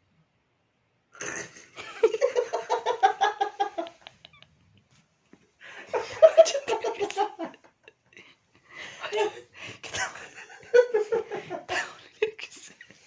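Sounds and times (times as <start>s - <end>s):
person giggling: 1.7s - 4.6s, 5.8s - 8.4s.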